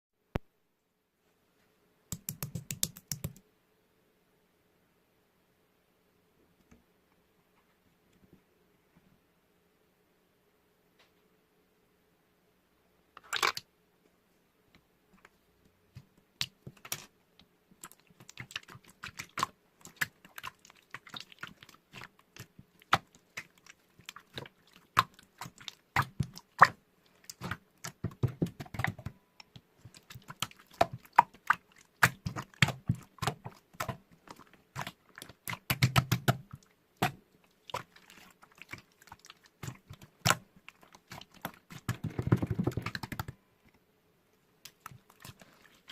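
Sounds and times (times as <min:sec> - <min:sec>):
sharp clicking and tapping: 0:02.1 - 0:03.4.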